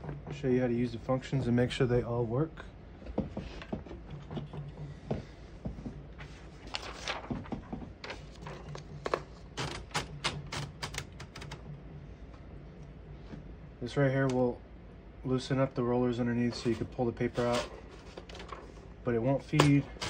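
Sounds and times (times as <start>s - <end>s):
typewriter clicks and clacks: 9.6s - 11.6s, 19.5s - 20.0s.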